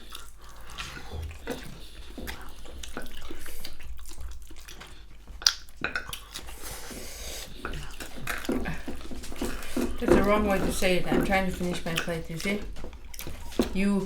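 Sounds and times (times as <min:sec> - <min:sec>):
mouth clicks: 0:00.0 - 0:10.2
wet chewing: 0:00.0 - 0:14.0.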